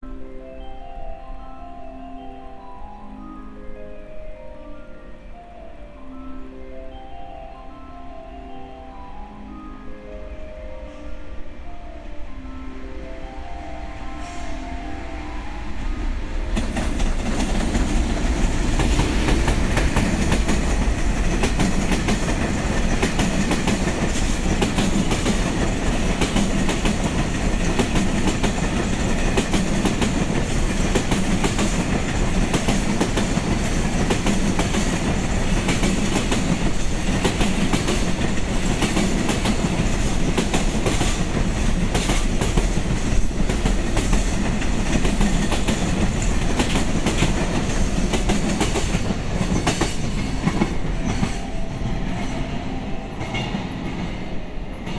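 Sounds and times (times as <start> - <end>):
freight train passing: 0.0 - 54.9
wheels clacking over rail joints: 16.5 - 54.9.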